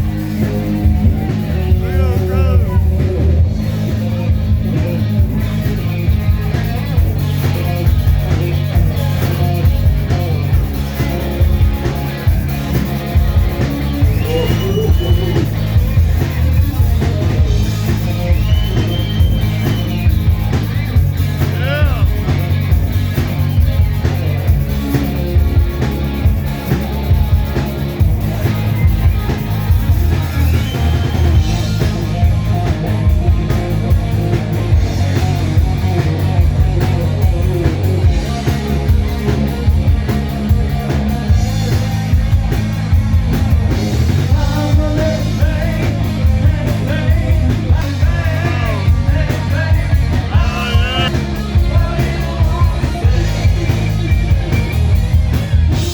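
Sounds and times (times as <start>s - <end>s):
heavy drums: 0.0s - 55.9s
rock band playing live: 0.0s - 55.9s
person singing: 14.2s - 15.5s, 47.8s - 53.8s.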